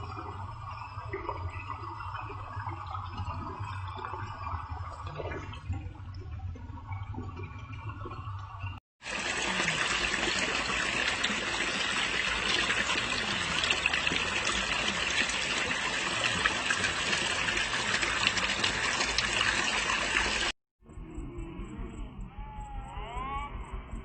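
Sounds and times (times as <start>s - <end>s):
stream trickling over rocks: 6.8s - 20.6s.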